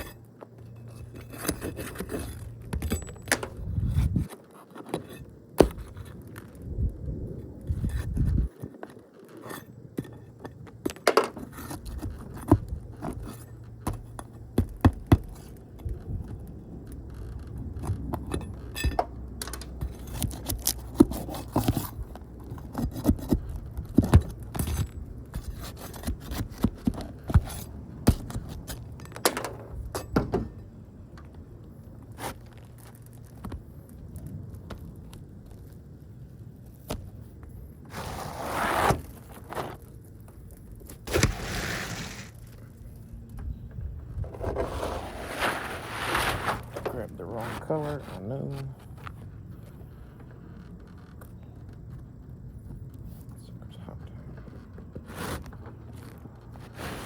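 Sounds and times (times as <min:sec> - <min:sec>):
tools clinking and scraping: 0:00.0 - 0:05.3.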